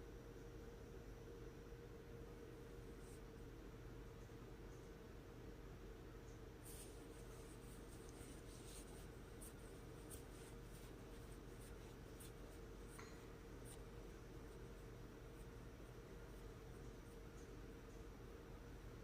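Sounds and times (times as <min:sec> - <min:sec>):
low room hum: 0:00.0 - 0:19.0
faint light ticks: 0:16.8 - 0:18.1.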